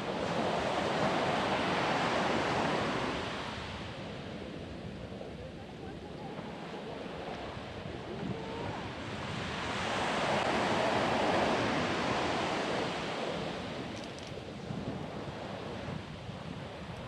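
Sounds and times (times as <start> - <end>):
wind on microphone: 0.0 - 17.0
ocean waves breaking: 6.5 - 14.0.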